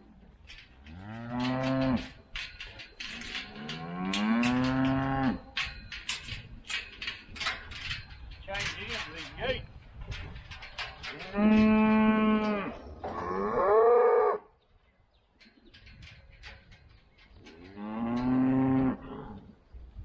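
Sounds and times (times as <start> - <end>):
cows mooing: 0.8 - 2.2, 3.1 - 5.6, 11.0 - 14.5, 17.4 - 19.5.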